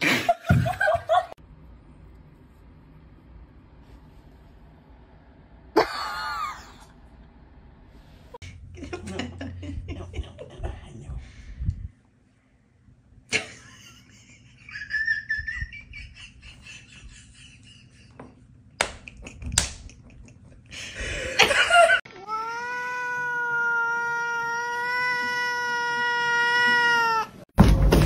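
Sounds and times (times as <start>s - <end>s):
cat yowling: 22.2s - 27.4s.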